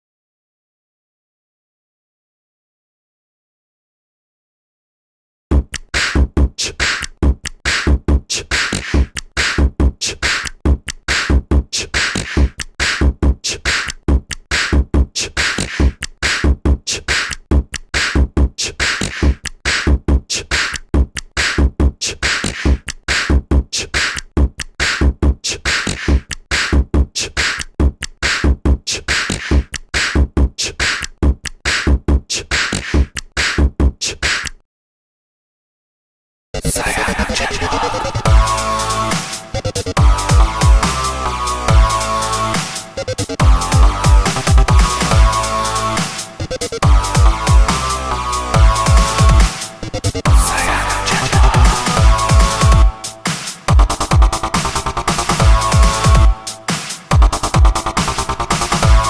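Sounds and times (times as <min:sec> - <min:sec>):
electronic drum loop ringtone: 0:37.7 - 0:59.0.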